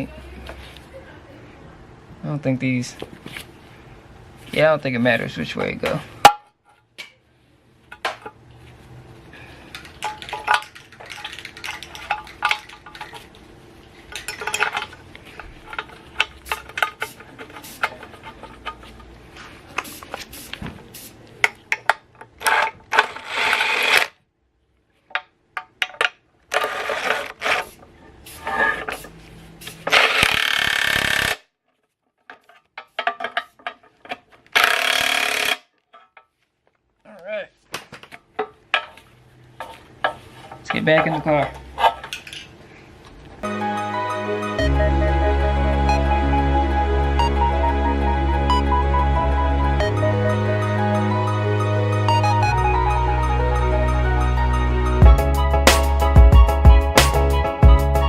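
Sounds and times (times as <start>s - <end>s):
metal tools clinking: 9.7s - 13.4s, 14.1s - 19.1s
cordless ratchet running: 29.9s - 31.4s, 34.6s - 35.6s.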